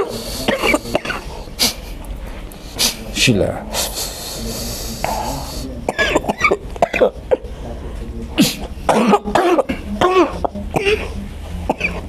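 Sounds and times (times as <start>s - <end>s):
woman coughing: 0.4s - 1.8s, 5.9s - 7.4s, 8.5s - 12.0s.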